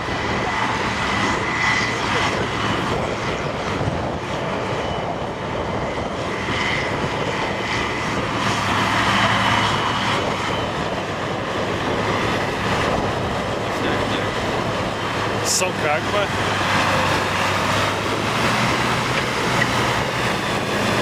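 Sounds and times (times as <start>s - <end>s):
diesel tractor engines under load: 12.0s - 21.0s.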